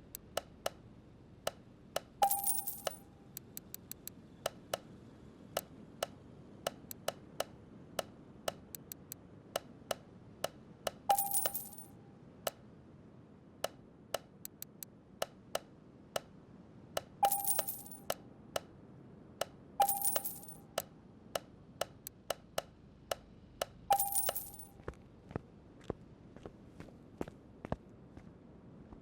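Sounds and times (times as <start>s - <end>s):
light metallic clicks: 1.5s - 4.9s, 13.6s - 16.3s
ringing metal clinks: 2.2s - 3.1s, 11.1s - 11.9s, 17.2s - 18.2s, 19.8s - 20.8s, 23.9s - 24.7s.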